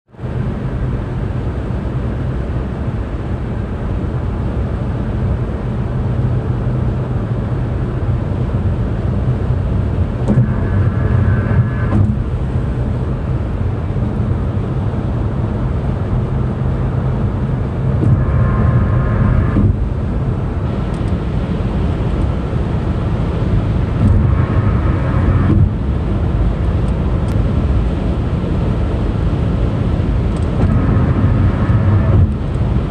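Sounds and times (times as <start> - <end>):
car tyres rumbling on road: 0.1 - 32.9
higher rising tone: 10.3 - 12.4, 18.0 - 20.2.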